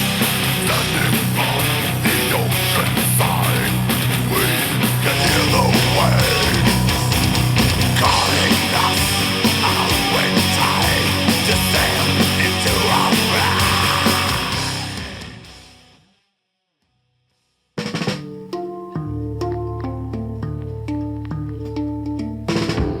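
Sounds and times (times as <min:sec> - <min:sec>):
heavy rock music through speakers: 0:00.0 - 0:15.9.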